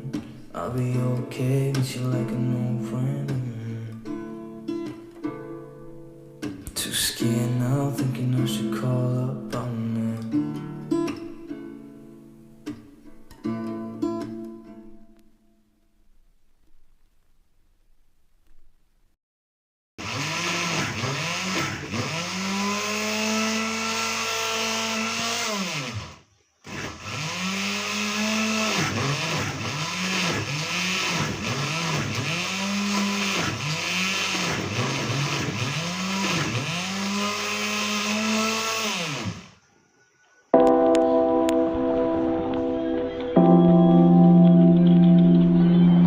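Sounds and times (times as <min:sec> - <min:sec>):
electric blender running: 0:20.0 - 0:39.6.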